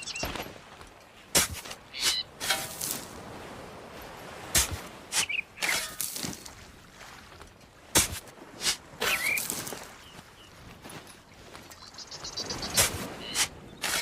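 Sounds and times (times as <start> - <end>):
shovel scraping into gritty soil: 1.3 - 3.1, 12.8 - 14.0.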